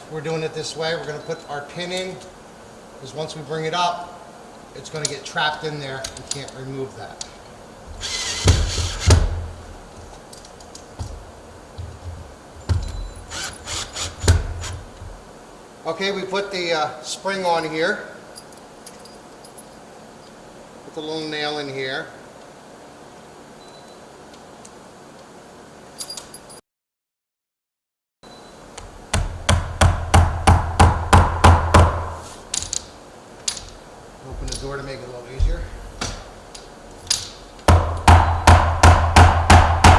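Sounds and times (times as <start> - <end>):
hammer tapping nail: 28.8 - 32.2, 37.7 - 39.9
metal hardware clicks and knocks: 32.5 - 38.5
low handling rumble: 33.7 - 38.1.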